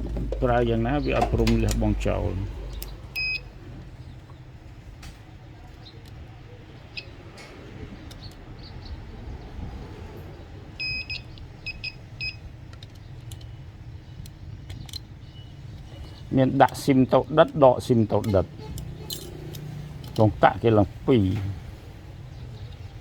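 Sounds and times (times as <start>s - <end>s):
electronic beeps: 0.0s - 3.5s, 10.8s - 12.4s
low steady hum: 0.0s - 23.0s
small clicks: 6.9s - 8.5s, 12.6s - 17.6s.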